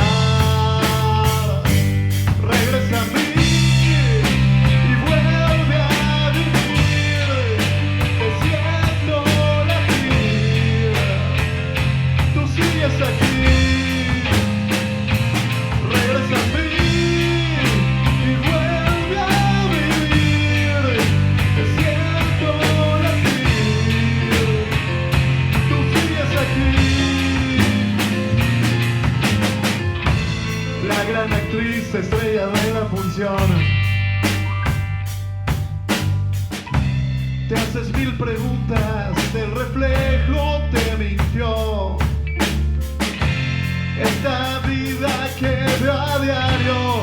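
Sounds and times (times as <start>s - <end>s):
lead guitar bending notes: 0.0s - 35.9s
bass low notes: 0.0s - 47.0s
drum kit beat: 0.0s - 47.0s.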